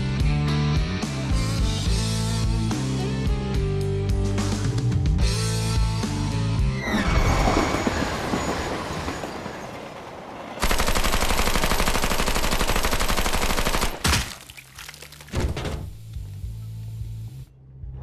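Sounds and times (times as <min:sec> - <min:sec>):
automatic gunfire: 0:10.6 - 0:14.3.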